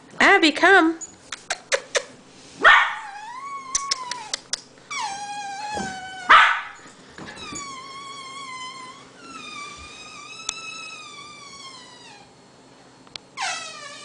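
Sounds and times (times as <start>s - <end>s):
dog yelping: 2.6s - 6.8s
dog howling and whining: 2.7s - 12.4s.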